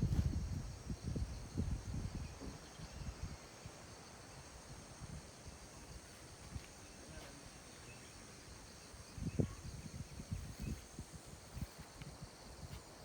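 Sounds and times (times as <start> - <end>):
wind rumbling on microphone: 0.0 - 7.2, 8.5 - 13.0.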